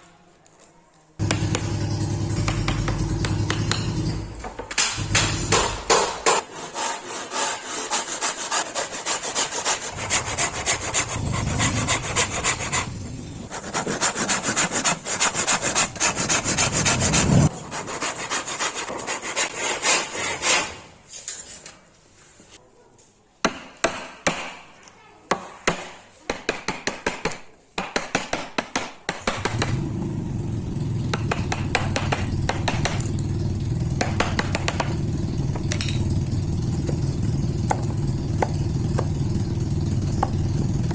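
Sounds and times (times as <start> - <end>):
machine running: 1.2 - 6.0
hand tool rasping wood: 5.0 - 20.7.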